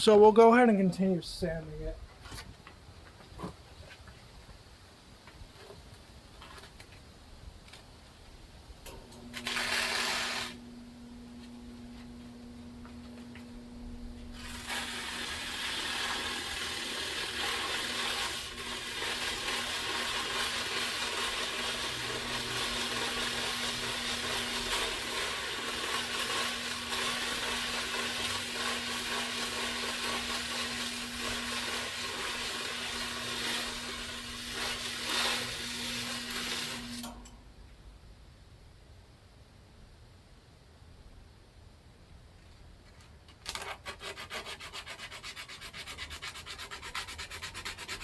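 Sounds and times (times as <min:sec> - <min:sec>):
electric fan motor humming: 0:08.8 - 0:37.5
sandpaper scraping hiss: 0:09.4 - 0:37.0, 0:43.5 - 0:48.0.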